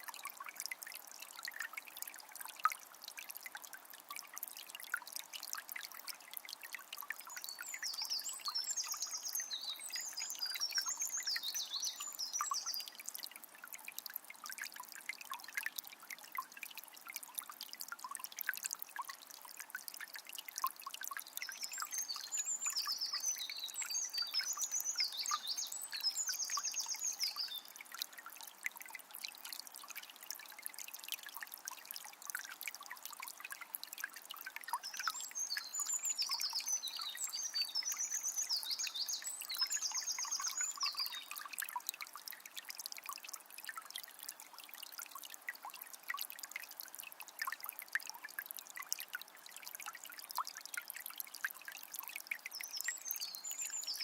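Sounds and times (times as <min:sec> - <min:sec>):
spring water trickling: 0:00.0 - 0:54.0
songbird chirping and trilling: 0:07.3 - 0:13.0, 0:21.4 - 0:27.8, 0:34.8 - 0:41.5, 0:52.6 - 0:54.0.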